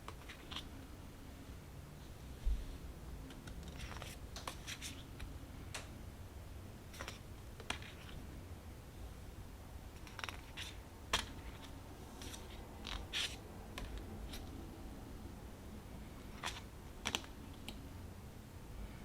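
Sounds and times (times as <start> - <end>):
cards clicking: 6.9 - 8.2, 10.0 - 14.6, 16.4 - 17.8
papery card scrapes: 11.4 - 13.4.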